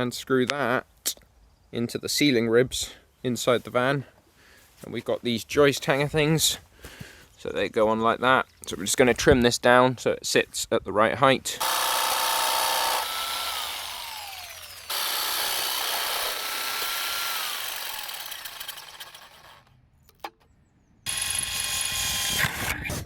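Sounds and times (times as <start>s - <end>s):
power saw cutting wood: 11.6s - 19.7s, 21.1s - 23.0s.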